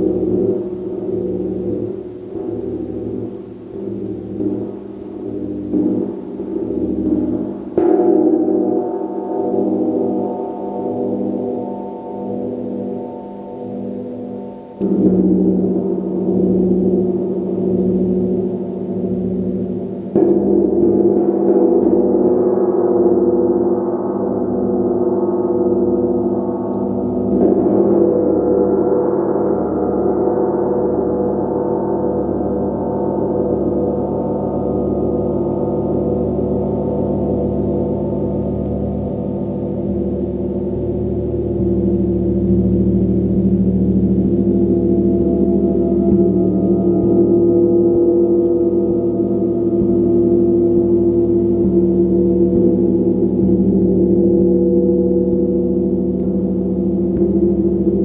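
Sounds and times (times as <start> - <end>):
gong ringing: 23.4 - 58.0.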